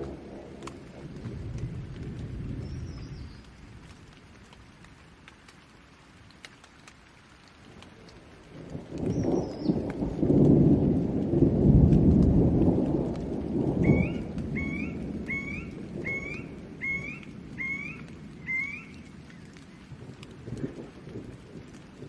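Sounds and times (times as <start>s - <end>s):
thunder rumbling: 0.0s - 5.2s, 7.7s - 22.0s
steady rain: 0.0s - 22.0s
bird calling: 13.8s - 19.6s.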